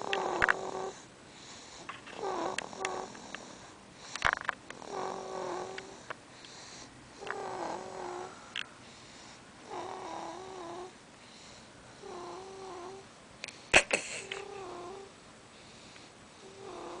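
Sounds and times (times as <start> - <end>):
high-pitched snores: 0.0 - 1.1, 1.7 - 8.5, 9.6 - 11.0, 12.0 - 13.0, 14.3 - 15.1, 16.4 - 17.0.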